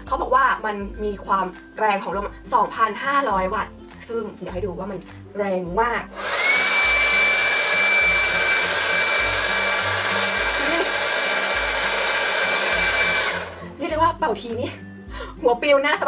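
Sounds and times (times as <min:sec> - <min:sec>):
hair dryer blowing: 0:06.1 - 0:13.8.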